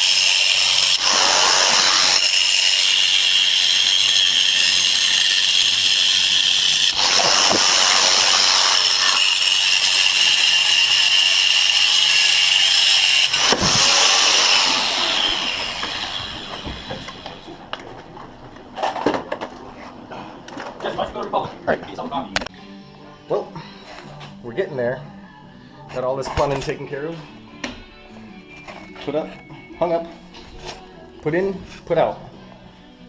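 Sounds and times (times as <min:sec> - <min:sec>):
power tool whining: 0:00.0 - 0:17.6.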